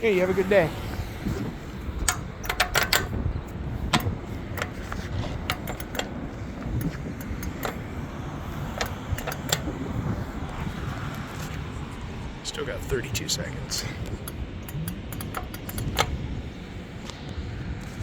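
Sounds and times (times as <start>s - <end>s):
road traffic rumble: 0.0s - 18.0s
sharp ticks and clicks: 2.0s - 3.2s, 5.4s - 6.2s, 6.8s - 9.8s, 13.7s - 16.3s.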